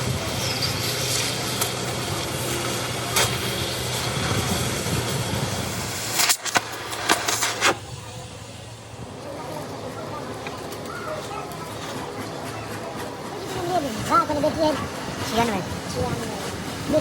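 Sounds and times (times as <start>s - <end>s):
engine humming: 0.0s - 17.0s.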